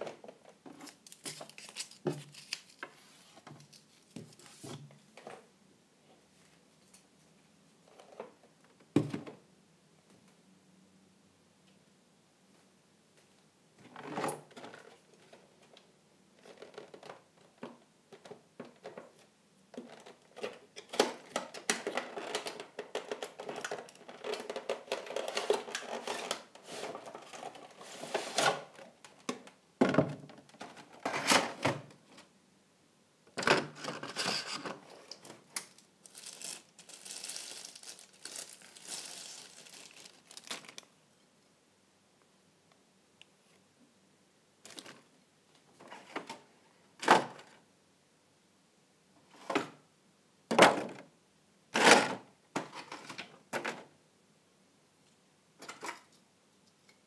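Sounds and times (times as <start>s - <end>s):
packaging rustling and tearing: 0.8s - 2.9s, 21.5s - 28.7s, 33.9s - 40.9s.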